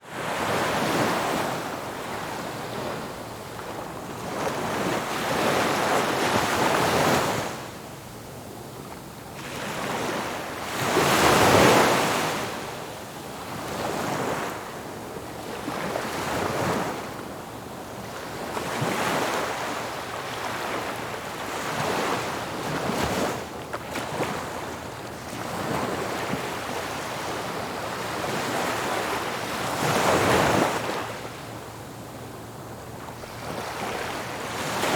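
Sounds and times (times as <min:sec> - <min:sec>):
ocean waves breaking on shore: 0:09.4 - 0:17.3, 0:17.9 - 0:31.7, 0:32.7 - 0:34.9.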